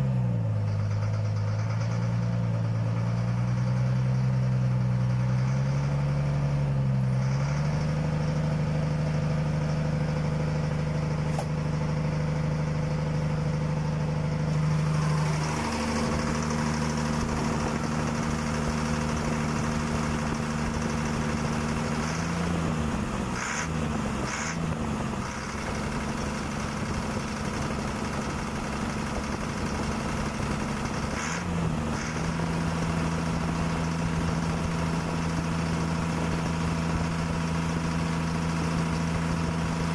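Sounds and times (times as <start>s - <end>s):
motor humming: 14.5s - 27.5s.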